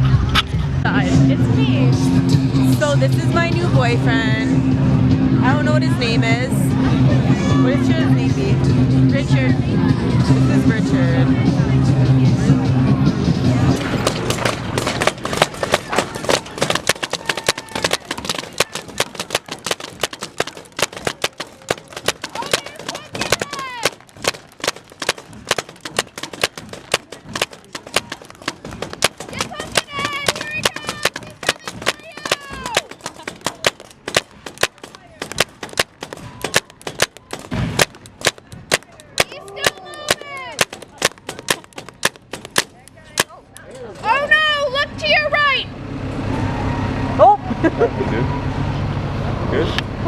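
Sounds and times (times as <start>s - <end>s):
heavy thump: 13.8s - 43.4s
paintball guns firing: 13.8s - 43.4s.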